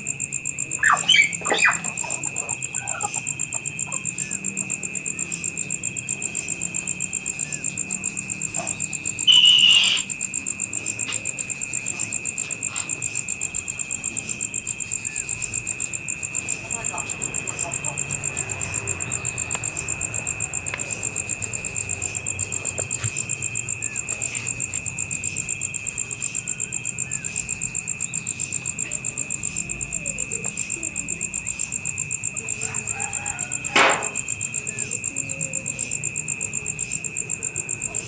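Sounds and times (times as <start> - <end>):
insects trilling: 0.0 - 38.0
faint chirps: 0.7 - 4.6, 7.4 - 10.2.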